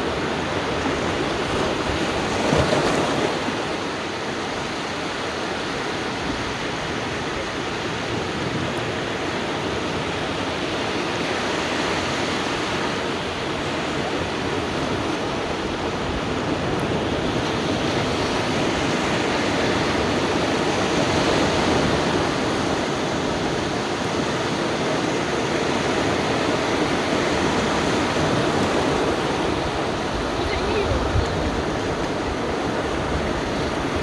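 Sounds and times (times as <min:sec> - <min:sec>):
surf breaking on beach: 0:11.6 - 0:34.0.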